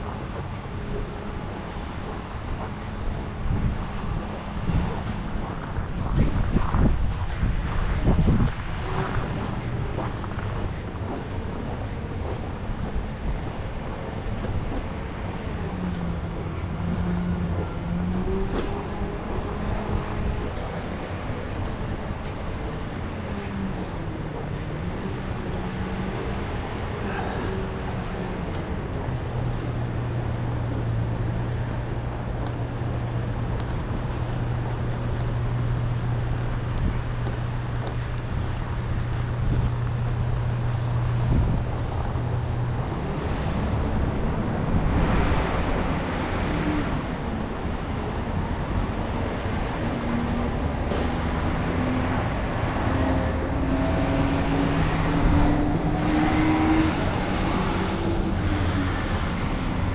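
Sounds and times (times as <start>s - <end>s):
low engine hum: 0.0s - 59.9s
vehicle whining as it speeds up: 0.0s - 59.9s
vehicle passing by: 48.6s - 59.9s.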